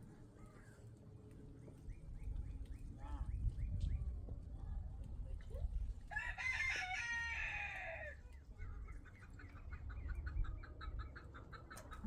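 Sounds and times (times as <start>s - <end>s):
rooster crowing: 6.1s - 8.0s.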